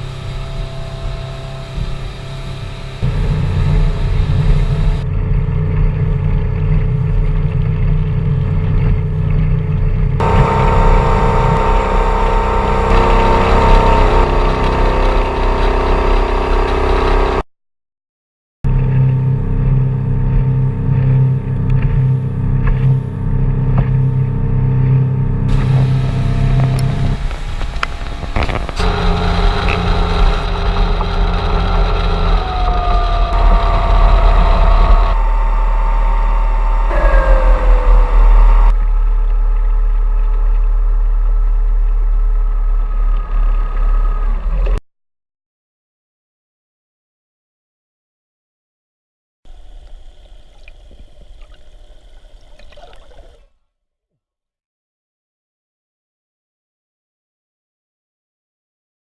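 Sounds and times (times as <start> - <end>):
boat engine running: 0.0 - 17.4, 18.7 - 44.8
falling engine whines: 0.0 - 17.5, 18.7 - 44.8.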